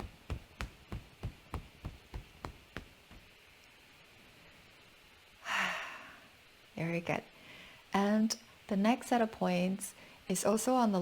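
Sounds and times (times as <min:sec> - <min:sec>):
fist tapping on arm: 0:00.0 - 0:03.3.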